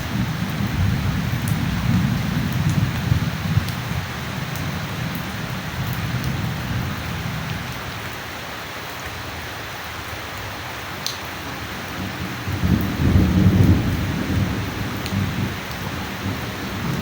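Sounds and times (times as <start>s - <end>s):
low thunder rumble: 0.0s - 7.6s, 12.0s - 17.0s
steady rain falling: 0.0s - 17.0s.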